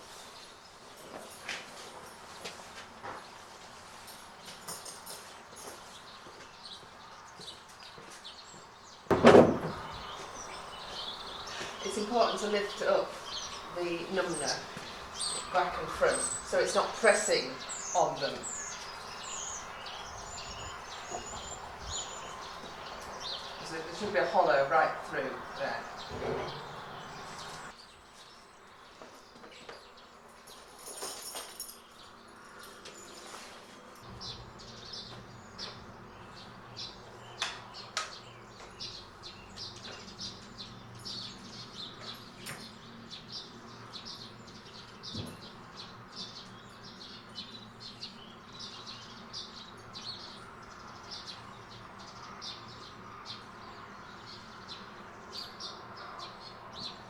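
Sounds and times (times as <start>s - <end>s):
small bird chirping: 9.7s - 28.0s.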